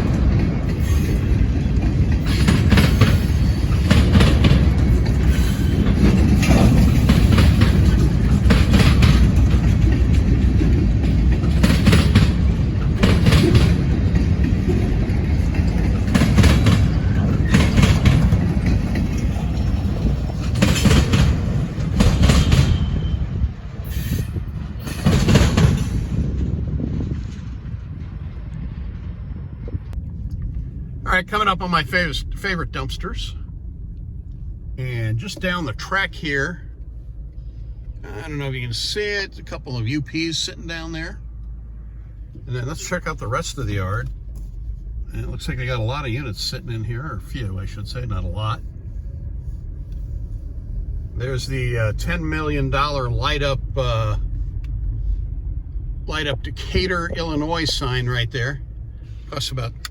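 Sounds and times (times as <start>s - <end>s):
wheels clicking over rail joints: 0.0s - 28.8s, 50.8s - 58.6s
freight train cars rumbling: 0.0s - 59.9s.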